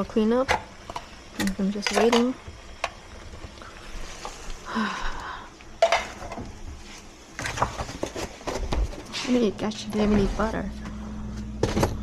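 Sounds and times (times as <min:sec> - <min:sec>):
dishes and utensils clinking: 0:00.5 - 0:02.4, 0:05.8 - 0:06.4.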